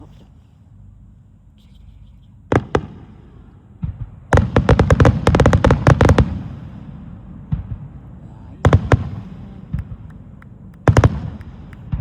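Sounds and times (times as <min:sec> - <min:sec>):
fireworks bangs: 0:02.5 - 0:12.0
low rumbling echo: 0:02.5 - 0:12.0.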